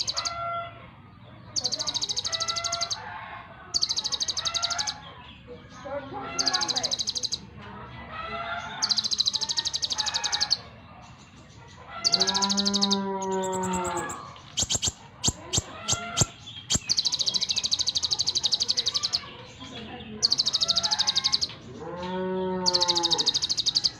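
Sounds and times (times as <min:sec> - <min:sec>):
bird rising and falling call: 0:12.1 - 0:17.8
bird high trills: 0:12.1 - 0:19.1, 0:22.7 - 0:23.9
bird sharp chips: 0:12.1 - 0:19.2.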